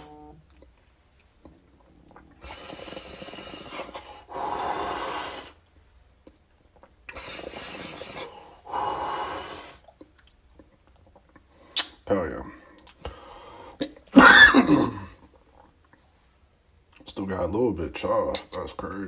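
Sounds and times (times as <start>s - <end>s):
forceful exhale: 2.4s - 5.6s
person inhaling: 2.4s - 5.6s, 7.2s - 9.8s, 13.0s - 13.8s.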